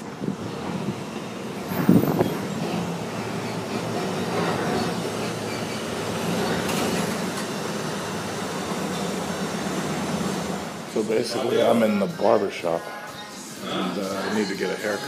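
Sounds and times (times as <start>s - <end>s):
vehicle rumble: 0.0s - 11.0s.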